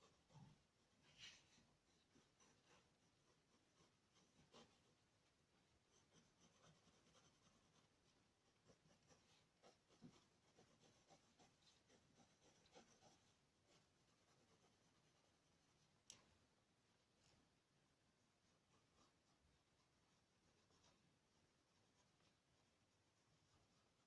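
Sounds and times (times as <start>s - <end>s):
pencil scratching on paper: 0.0s - 5.1s, 5.7s - 16.0s, 18.2s - 24.0s.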